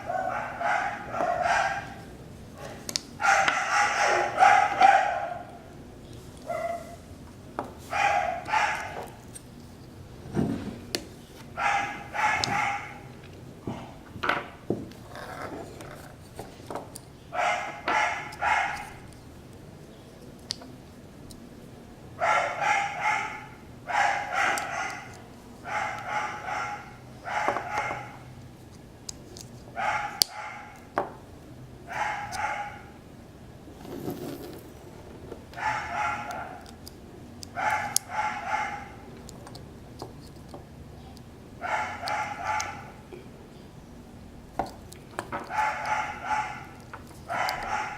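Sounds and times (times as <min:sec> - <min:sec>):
dog barking: 0:00.0 - 0:02.0, 0:03.2 - 0:05.6, 0:06.5 - 0:07.0, 0:07.9 - 0:09.0, 0:11.6 - 0:13.1, 0:17.4 - 0:19.0, 0:22.2 - 0:28.3, 0:29.8 - 0:30.8, 0:31.9 - 0:33.0, 0:35.6 - 0:36.7, 0:37.6 - 0:39.0, 0:41.6 - 0:43.0, 0:45.4 - 0:47.9.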